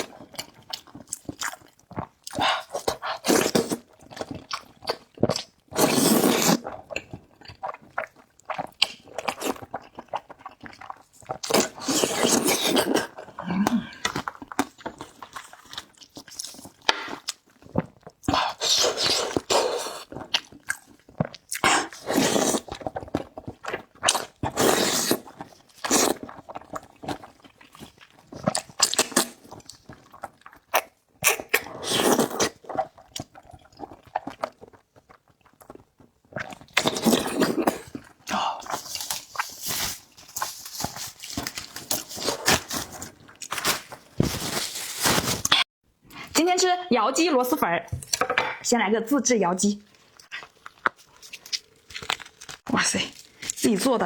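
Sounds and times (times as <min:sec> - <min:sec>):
slurping and chewing: 0:00.0 - 0:46.4, 0:49.9 - 0:53.6.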